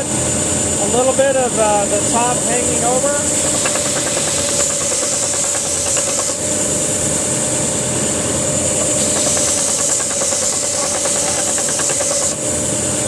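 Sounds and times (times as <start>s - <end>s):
belt sander sanding wood: 2.1s - 6.5s, 8.6s - 12.4s.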